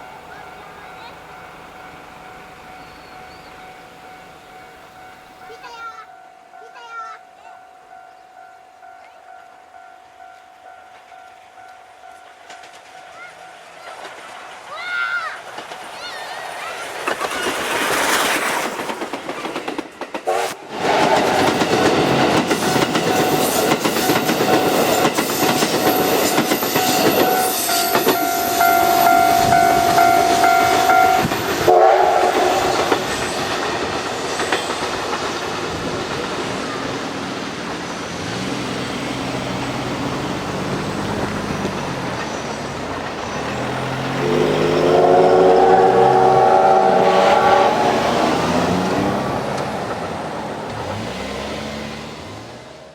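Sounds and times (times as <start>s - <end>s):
steam train wheels clattering: 10.9s - 51.6s
steady high tone: 22.4s - 33.2s, 43.9s - 50.5s
engine sound: 36.3s - 52.9s.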